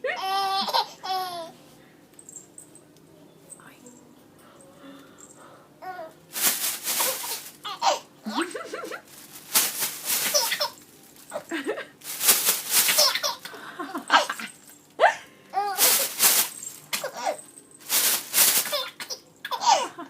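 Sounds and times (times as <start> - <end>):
baby laughing and squealing: 0.2 - 1.5, 7.0 - 9.1, 10.2 - 11.4, 12.9 - 13.5, 17.0 - 17.4, 18.6 - 19.9
plastic bag rustling: 6.3 - 13.4, 15.6 - 19.0.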